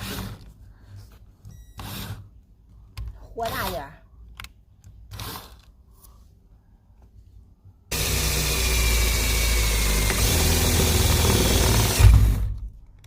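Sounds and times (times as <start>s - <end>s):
power drill drilling: 1.8s - 2.2s, 5.1s - 5.6s, 7.9s - 12.7s.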